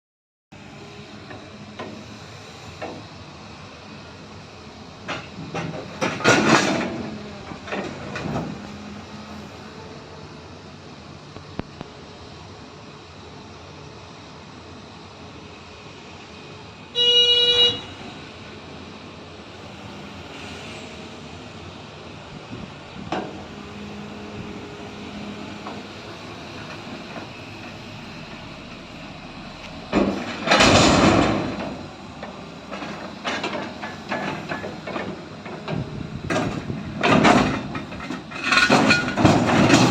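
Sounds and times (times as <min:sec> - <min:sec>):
freight train rumble: 0:00.6 - 0:39.9
steady hum and hiss: 0:00.6 - 0:39.9
metallic knocks and clanks: 0:29.7 - 0:39.9.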